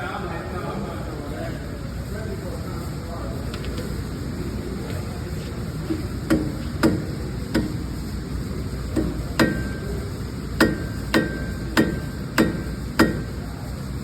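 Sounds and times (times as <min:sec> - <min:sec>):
hammer striking metal: 0:06.2 - 0:07.9, 0:08.9 - 0:13.6.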